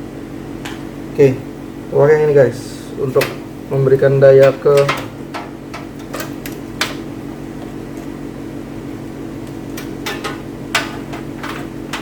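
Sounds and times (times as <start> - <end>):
machine hum: 0.0 - 12.0
computer hardware clicks and knocks: 4.4 - 7.0, 9.8 - 12.0.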